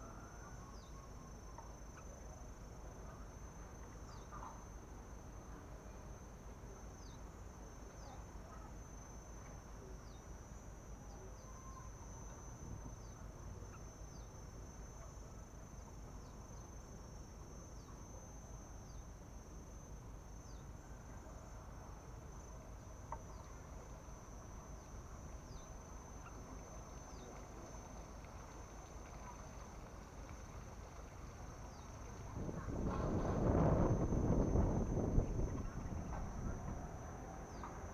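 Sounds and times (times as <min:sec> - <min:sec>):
crickets trilling: 0:00.0 - 0:37.9
low rumble: 0:32.3 - 0:37.8.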